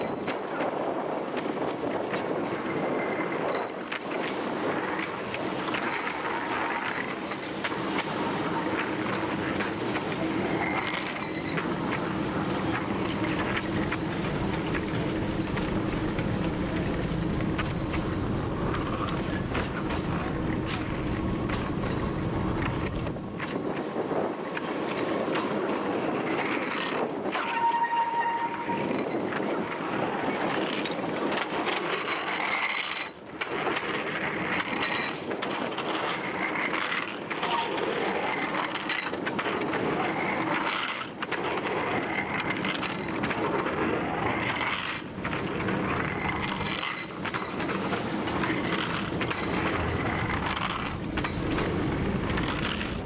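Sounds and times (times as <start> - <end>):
diesel locomotive engine drone: 0.0 - 53.0
wheel and rail noise: 0.0 - 53.0
brief high tone: 27.4 - 29.0.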